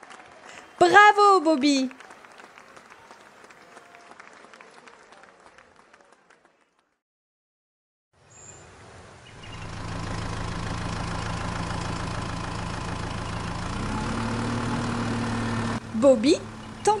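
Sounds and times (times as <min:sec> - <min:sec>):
motor engine idling: 0:09.4 - 0:17.0.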